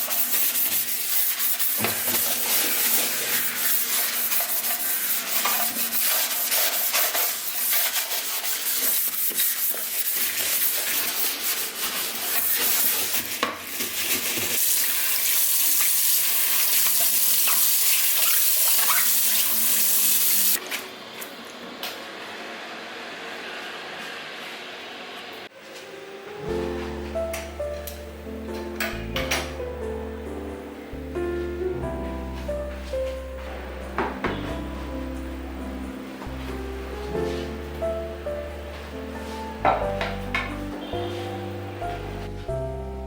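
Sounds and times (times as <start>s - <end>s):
scrubbing and rubbing: 0.0s - 14.6s
tap water running into sink: 13.1s - 20.6s.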